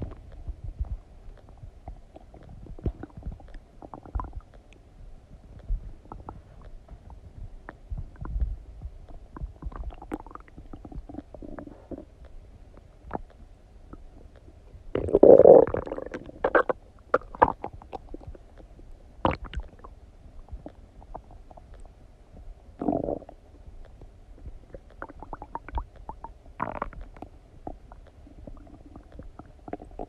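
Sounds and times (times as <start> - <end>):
small pops and bubbling: 0.0 - 4.8, 9.1 - 21.9, 24.7 - 30.0
stomach gurgling: 0.0 - 30.0.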